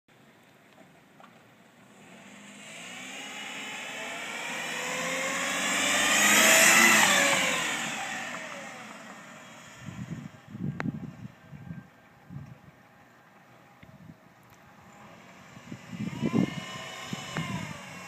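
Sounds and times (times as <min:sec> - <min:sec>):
car driving past: 0:01.8 - 0:11.3.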